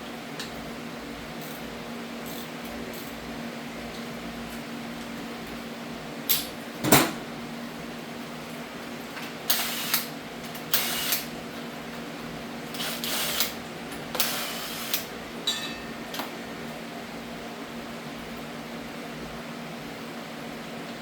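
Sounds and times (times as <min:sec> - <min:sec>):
metal tools clanking and scraping: 0:15.4 - 0:16.0.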